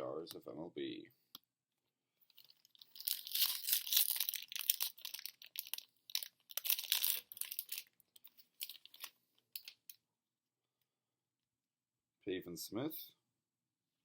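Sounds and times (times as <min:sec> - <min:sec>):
wrapper rustling: 0:02.3 - 0:09.9
foil wrapper tearing and crinkling: 0:02.4 - 0:08.0, 0:08.6 - 0:09.8.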